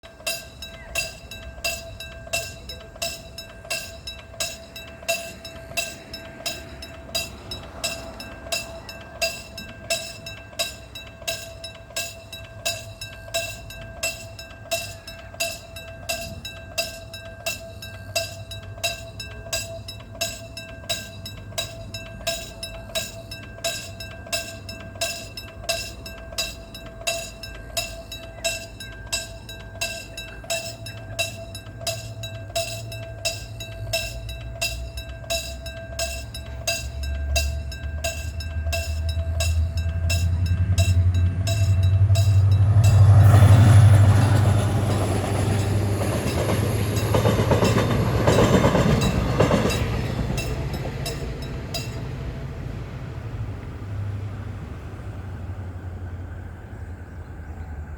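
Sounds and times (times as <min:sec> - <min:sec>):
crossing warning bell ringing: 0:00.0 - 0:57.9
train rumble: 0:00.0 - 0:57.9
train wheel and engine noise: 0:00.0 - 0:57.9.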